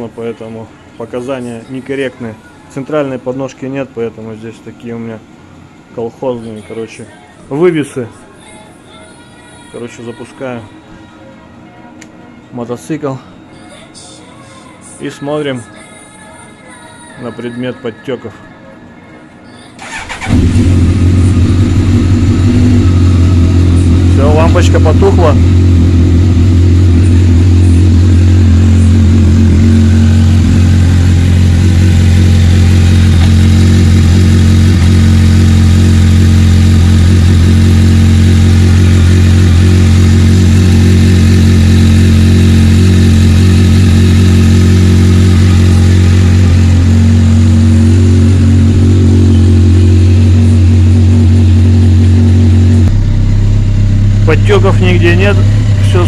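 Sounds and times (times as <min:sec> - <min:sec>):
motorcycle engine idling: 0:19.8 - 0:56.0.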